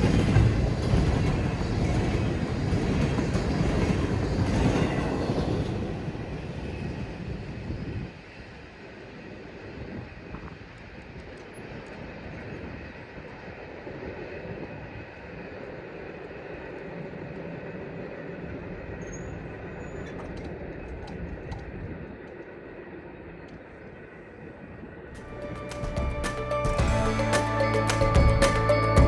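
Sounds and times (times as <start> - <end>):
freight train wheels on rail: 0.0 - 29.0
outro music: 25.2 - 29.0.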